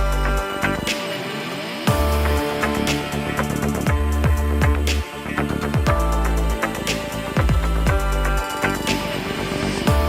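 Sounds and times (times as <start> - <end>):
electronic music with heavy bass: 0.0 - 10.0
steady drum beat: 1.9 - 5.1, 5.7 - 8.5.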